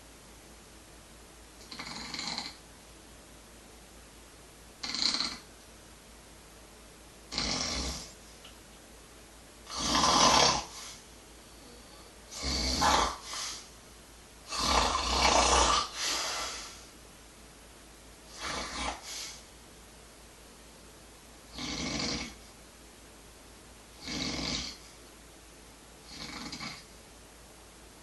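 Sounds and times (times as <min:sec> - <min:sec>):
person snoring: 0:01.6 - 0:02.6, 0:04.8 - 0:05.4, 0:07.3 - 0:08.2, 0:09.6 - 0:11.0, 0:11.6 - 0:13.7, 0:14.5 - 0:16.8, 0:18.3 - 0:19.4, 0:21.5 - 0:22.5, 0:24.0 - 0:24.9, 0:26.0 - 0:26.9.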